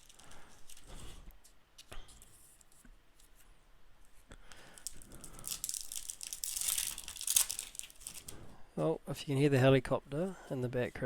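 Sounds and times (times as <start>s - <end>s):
wrapper crinkling and tearing: 0.0s - 1.1s, 4.5s - 8.4s.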